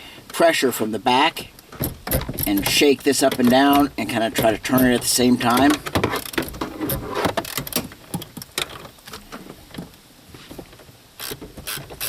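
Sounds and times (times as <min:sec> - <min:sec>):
ratchet clicking on a bolt: 0:01.8 - 0:08.8, 0:11.2 - 0:12.0.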